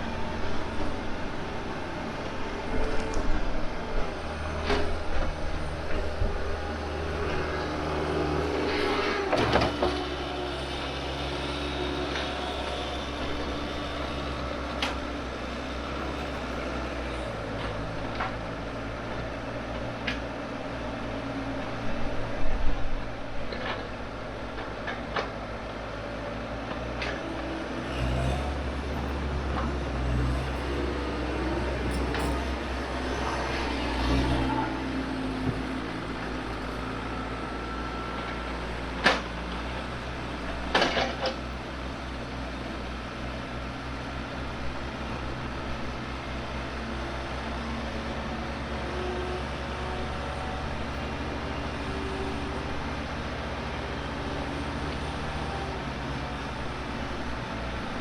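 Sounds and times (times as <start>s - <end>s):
excavator diesel engine running: 0.0s - 58.0s.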